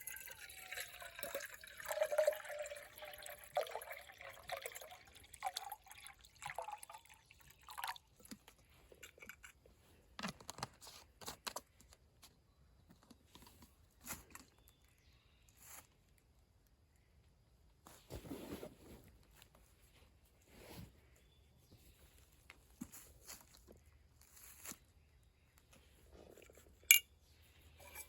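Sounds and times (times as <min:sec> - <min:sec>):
liquid pouring and sloshing: 0:00.0 - 0:09.5.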